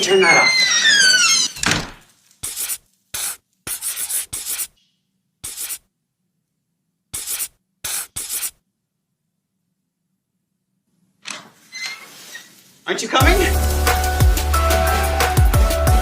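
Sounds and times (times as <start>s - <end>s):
short rubbing noises: 2.4s - 4.8s, 5.4s - 5.9s, 7.1s - 8.6s, 11.5s - 12.8s.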